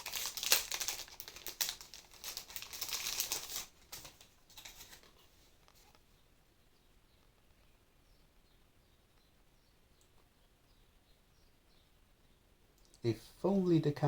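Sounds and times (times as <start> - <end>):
plastic packaging crinkling: 0.0 - 5.2.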